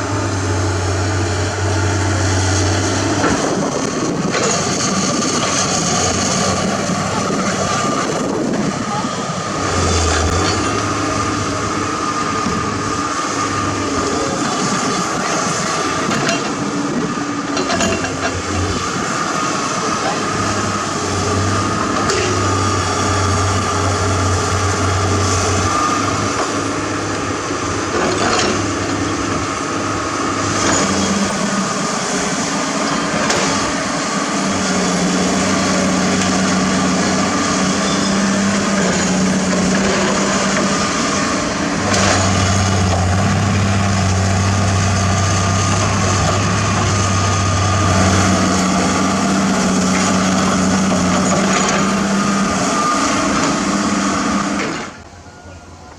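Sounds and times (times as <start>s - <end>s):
heavy diesel engines humming: 0.0s - 55.9s
digging clanks and knocks: 17.6s - 18.4s.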